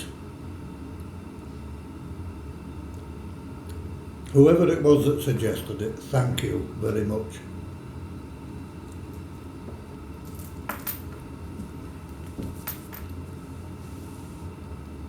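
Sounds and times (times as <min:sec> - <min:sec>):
low steady hum: 0:00.0 - 0:15.0
light clicks and clinks at table: 0:10.3 - 0:11.2, 0:12.4 - 0:13.1.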